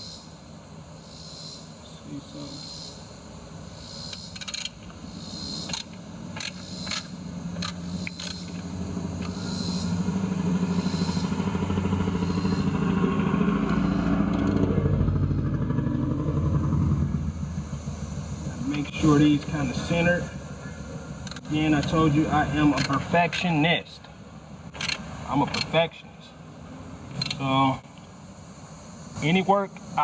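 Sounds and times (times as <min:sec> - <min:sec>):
vehicle engine passing by: 0:01.2 - 0:30.0
sharp clicks: 0:04.0 - 0:09.4, 0:13.6 - 0:14.8, 0:21.2 - 0:22.1, 0:22.7 - 0:23.6, 0:24.7 - 0:25.8, 0:27.1 - 0:28.1.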